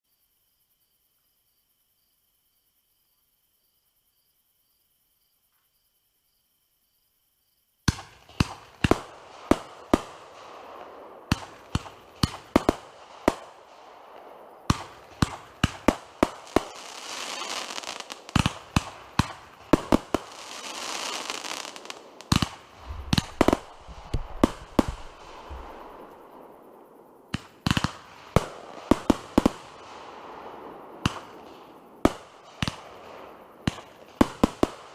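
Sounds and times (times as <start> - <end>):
fireworks bangs: 7.9 - 34.9
fireworks crackling: 7.9 - 34.9.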